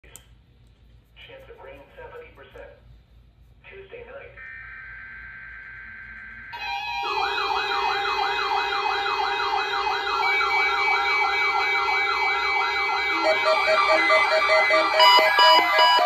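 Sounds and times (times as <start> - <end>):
fast warbling siren: 4.4 - 16.0
steady alarm tones: 4.4 - 16.0
electronic beeping: 13.0 - 16.0.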